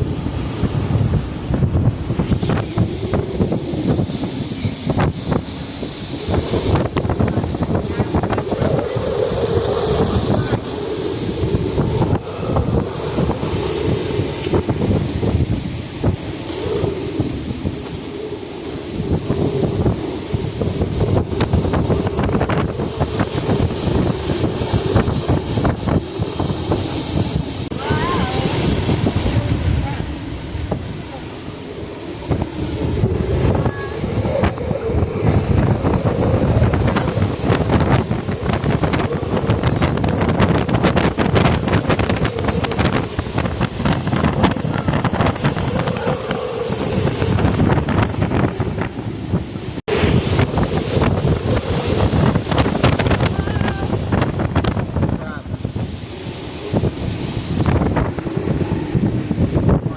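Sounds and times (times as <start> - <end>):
strong wind on microphone: 0.0 - 59.9.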